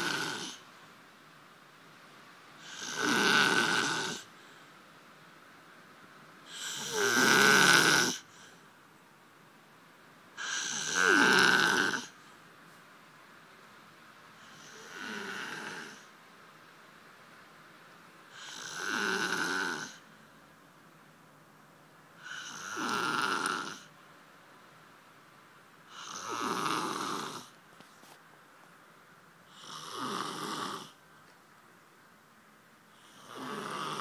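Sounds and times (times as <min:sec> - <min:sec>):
man snoring loudly: 0:00.0 - 0:00.6, 0:02.6 - 0:04.3, 0:06.5 - 0:08.3, 0:10.4 - 0:12.2, 0:14.5 - 0:16.1, 0:18.3 - 0:20.0, 0:22.2 - 0:23.9, 0:25.9 - 0:27.5, 0:29.5 - 0:31.0, 0:33.0 - 0:34.0
quiet breaths: 0:00.0 - 0:34.0.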